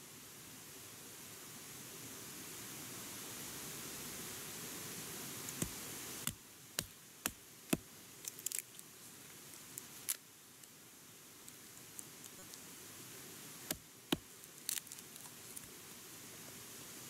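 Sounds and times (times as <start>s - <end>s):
steady hiss: 0.0s - 17.0s.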